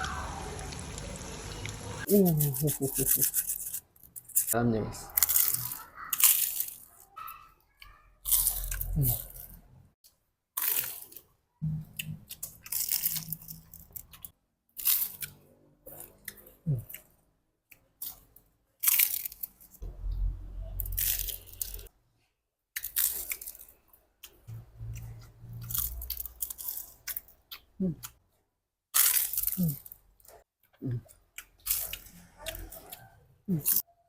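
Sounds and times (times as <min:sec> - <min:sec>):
crunchy bites and chewing: 0:08.2 - 0:09.6, 0:10.6 - 0:17.2, 0:17.8 - 0:19.8, 0:20.8 - 0:21.9, 0:22.8 - 0:28.2, 0:28.9 - 0:33.9.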